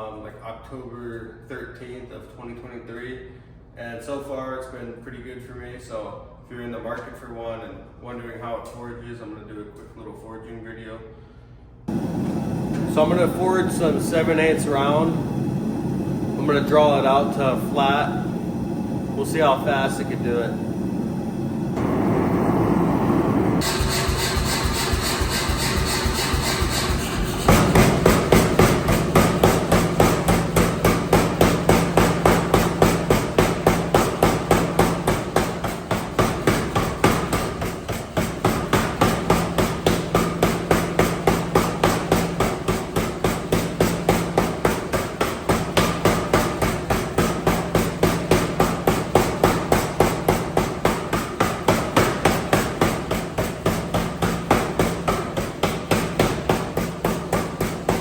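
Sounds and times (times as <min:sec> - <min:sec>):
power hammer striking hot metal: 0:11.9 - 0:20.7, 0:23.6 - 0:58.0
hammer motor humming: 0:11.9 - 0:58.0.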